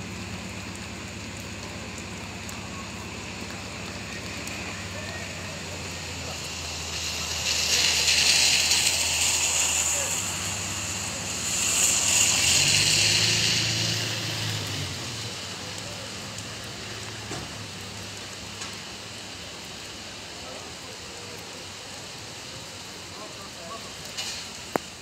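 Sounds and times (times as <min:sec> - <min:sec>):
low engine hum: 0:00.0 - 0:19.9
heavy rain: 0:00.0 - 0:25.0
tyres hissing on wet street: 0:00.0 - 0:25.0.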